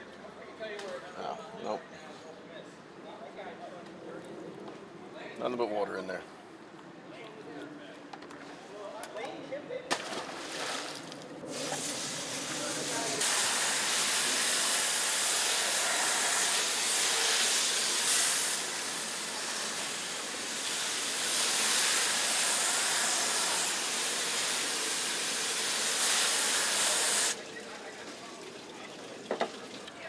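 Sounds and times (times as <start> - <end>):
water spraying from hose: 10.0 - 30.0.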